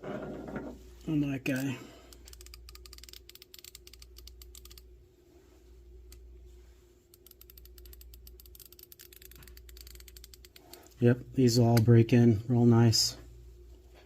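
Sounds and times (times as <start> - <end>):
ratchet pawl fine clicks: 1.5 - 4.9, 7.1 - 11.0.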